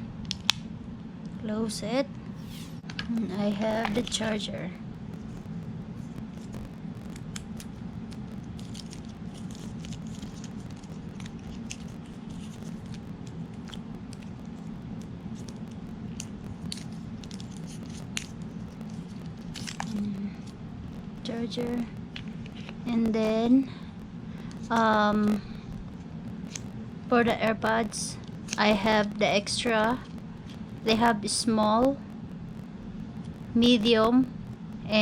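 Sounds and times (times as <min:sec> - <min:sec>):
steady low hum: 0:00.0 - 0:35.0
packaging crinkling: 0:06.0 - 0:14.7, 0:15.3 - 0:21.2.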